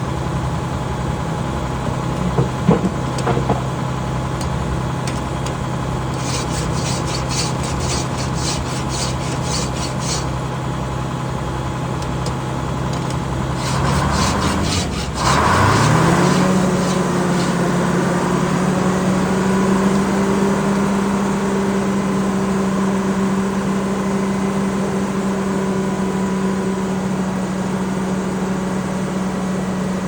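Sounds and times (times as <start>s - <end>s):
hand file rasping on saw teeth: 6.1s - 10.4s, 13.6s - 17.8s.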